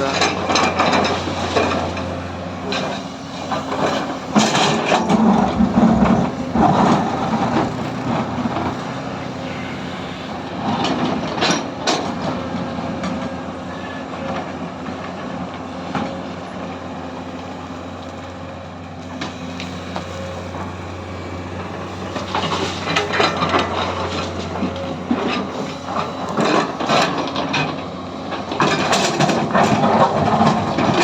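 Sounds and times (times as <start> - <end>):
excavator diesel engine running: 0.0 - 31.0
machine clatter and knocks: 0.1 - 2.1, 2.7 - 8.8, 10.6 - 13.3, 22.2 - 31.0.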